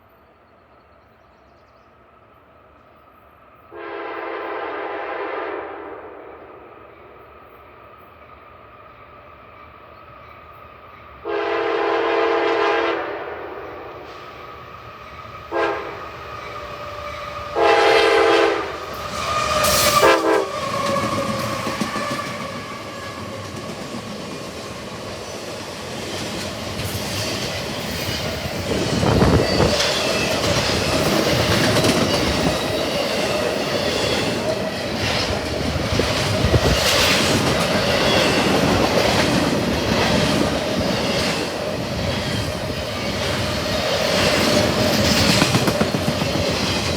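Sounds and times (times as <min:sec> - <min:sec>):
locomotive air horn blasts: 0:03.7 - 0:06.4, 0:11.2 - 0:14.3, 0:15.5 - 0:16.0, 0:17.4 - 0:20.6
train wheels clattering over rail joints: 0:18.9 - 0:46.9.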